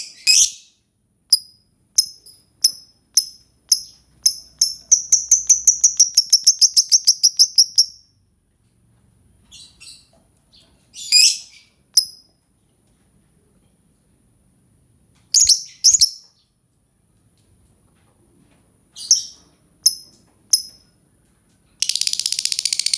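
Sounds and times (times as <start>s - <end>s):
lovebird chirping: 0.0s - 0.7s, 1.3s - 8.0s, 9.5s - 12.2s, 15.3s - 16.4s, 19.0s - 20.8s, 21.8s - 22.9s.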